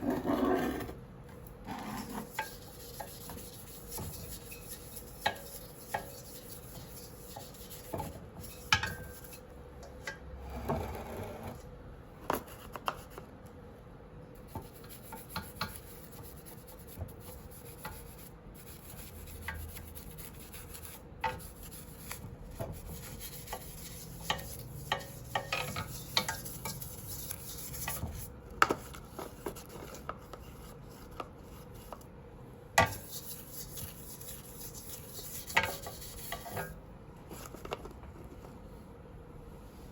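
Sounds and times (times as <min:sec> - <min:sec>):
hand scrubbing metal: 0:01.9 - 0:09.4, 0:22.8 - 0:28.2, 0:32.9 - 0:36.7.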